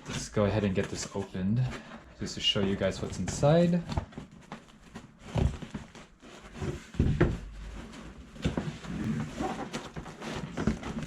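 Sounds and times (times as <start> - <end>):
cardboard bumps and scrapes: 3.3 - 11.0.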